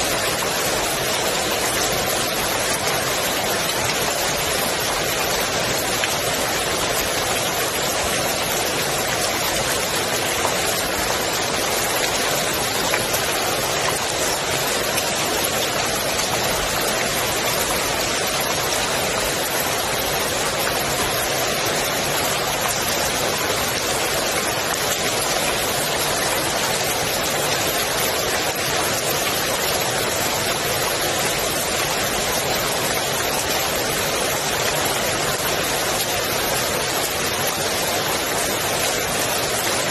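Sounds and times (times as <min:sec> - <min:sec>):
rain on pool water: 0:00.0 - 0:39.9.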